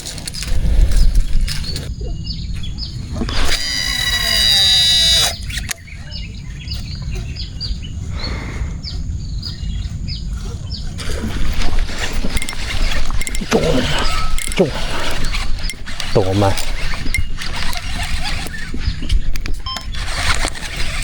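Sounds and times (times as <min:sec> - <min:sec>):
small birds chirping: 0:00.0 - 0:21.0
loud multi-tone whine: 0:02.8 - 0:05.8.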